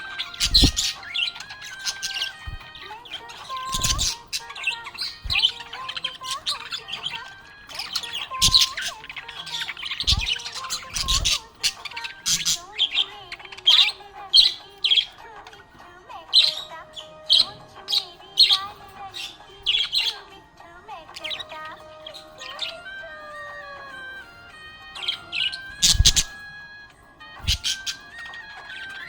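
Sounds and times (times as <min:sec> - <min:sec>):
budgerigar chirping: 0:00.0 - 0:15.2, 0:25.0 - 0:26.4, 0:27.4 - 0:29.0
dull thumps: 0:00.4 - 0:00.9.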